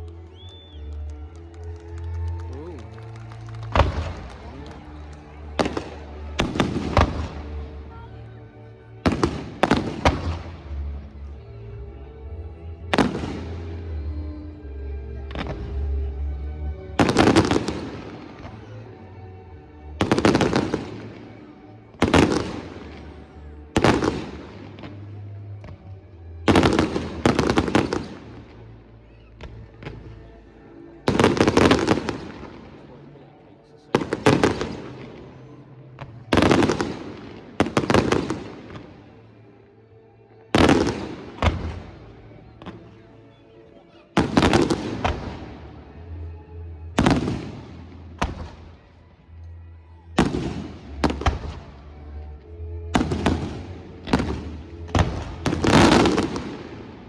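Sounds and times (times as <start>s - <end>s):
music playing: 0.0s - 57.0s
fireworks bangs echoing: 9.0s - 10.7s, 12.9s - 13.8s, 17.0s - 18.7s, 20.0s - 21.3s, 22.0s - 25.7s, 26.5s - 28.6s, 31.1s - 32.8s, 33.9s - 35.4s, 36.0s - 39.0s, 40.5s - 42.8s, 44.2s - 45.8s, 47.0s - 48.7s, 50.2s - 51.8s, 52.9s - 57.0s.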